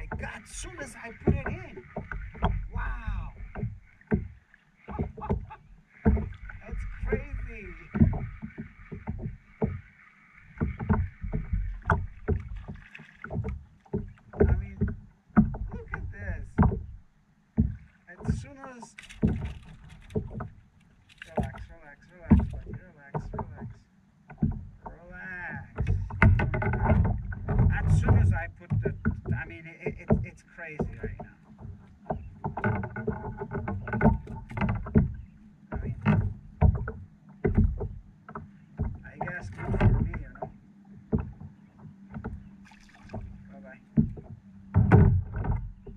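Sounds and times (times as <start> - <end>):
low thuds: 0.0 - 20.6, 21.2 - 45.9
low thumps: 0.0 - 20.6, 21.3 - 45.9
knocks on a boat: 0.0 - 20.7, 21.3 - 45.9
water splashes: 0.0 - 45.9.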